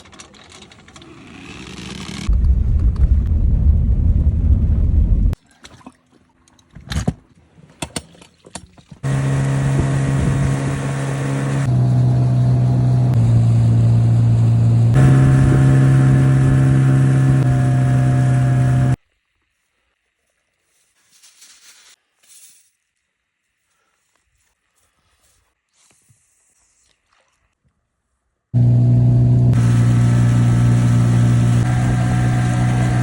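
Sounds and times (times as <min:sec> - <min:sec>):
loud low rumble: 0:02.3 - 0:05.4, 0:11.8 - 0:19.0
outboard boat motor running: 0:09.0 - 0:19.0, 0:28.6 - 0:33.0.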